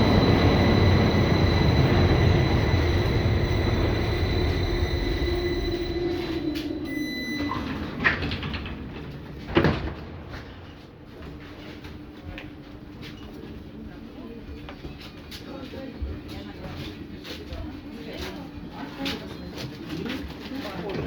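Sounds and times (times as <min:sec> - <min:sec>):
tram doors clunking: 0:00.0 - 0:12.1
tram drive whine: 0:00.0 - 0:13.1
tram running noise: 0:00.0 - 0:21.0.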